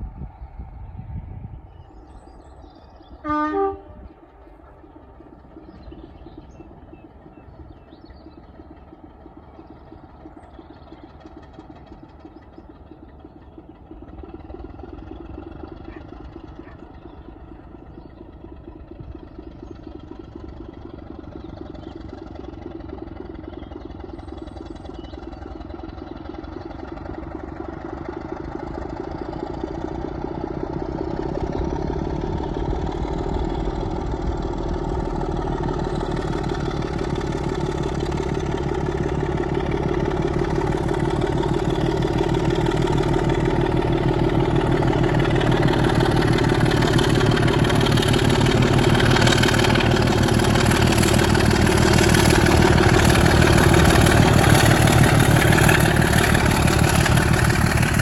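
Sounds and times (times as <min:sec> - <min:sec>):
locomotive rumbling: 0:00.0 - 0:58.0
train horn blast: 0:03.2 - 0:04.9.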